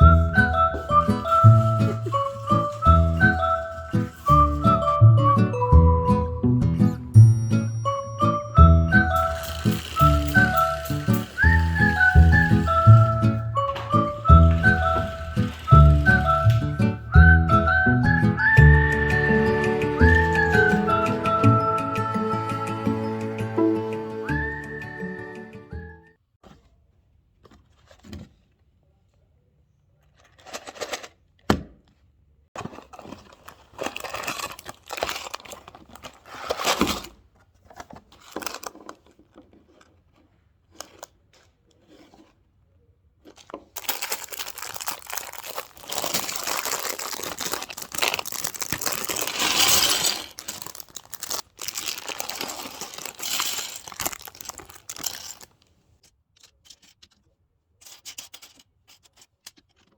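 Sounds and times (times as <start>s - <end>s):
packaging crinkling: 0.0s - 5.0s, 9.0s - 17.8s, 19.2s - 21.3s, 32.6s - 42.4s, 43.2s - 55.8s.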